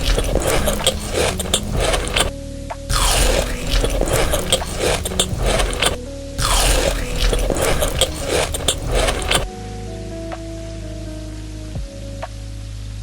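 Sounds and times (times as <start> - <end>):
crunchy biting and chewing: 0.0 - 2.3, 2.9 - 9.5
soft steady music: 0.0 - 13.0.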